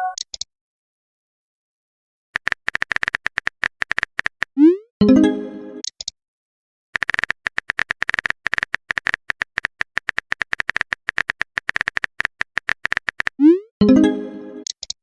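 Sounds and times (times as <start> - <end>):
phone keyboard typing clicks: 2.4 - 4.6, 7.0 - 13.4.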